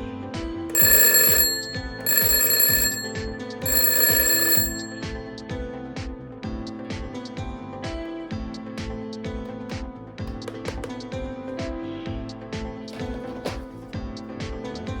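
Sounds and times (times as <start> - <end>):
high electronic ringing: 0.7 - 5.3.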